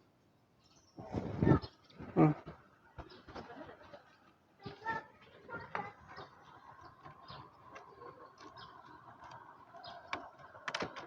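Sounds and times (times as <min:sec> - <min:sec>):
steady background hum: 0:04.6 - 0:11.0.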